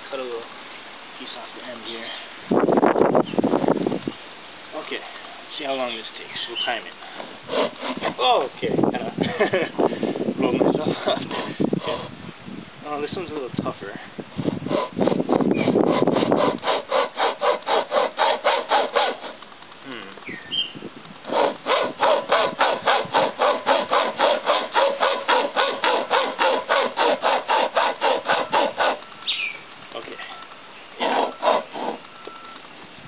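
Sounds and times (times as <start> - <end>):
chain saw cutting wooden branch: 6.7 - 8.8, 14.3 - 32.8.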